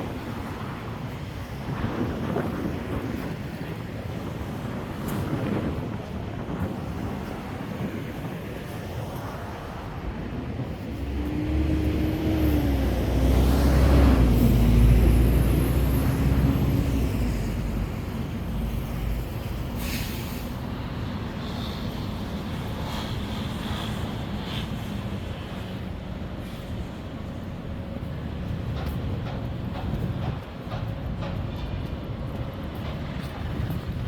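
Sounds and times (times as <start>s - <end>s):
city traffic: 0.0s - 34.0s
large vehicle engine rumble: 10.0s - 22.3s
short hiss: 19.8s - 20.5s.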